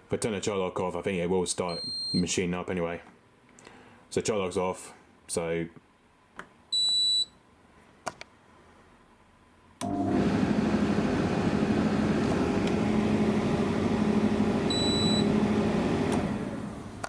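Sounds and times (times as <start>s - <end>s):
tumble dryer motor and fan hum: 9.8s - 17.0s
high beep: 14.7s - 15.3s
click: 16.1s - 16.3s.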